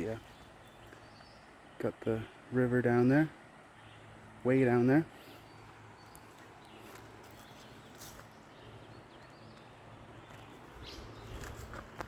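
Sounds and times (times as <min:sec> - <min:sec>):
footsteps on forest trail: 0:05.2 - 0:12.0.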